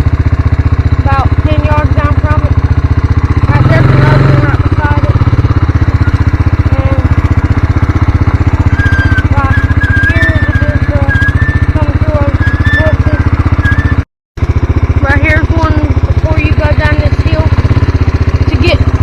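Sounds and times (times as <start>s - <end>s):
engine running loudly: 0.0s - 19.0s.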